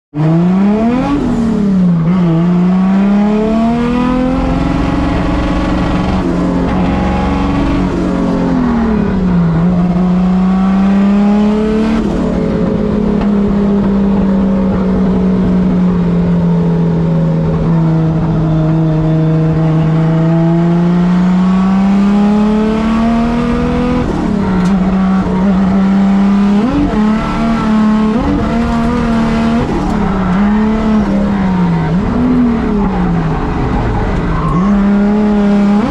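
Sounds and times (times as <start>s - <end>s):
car engine misfiring: 26.4s - 34.6s.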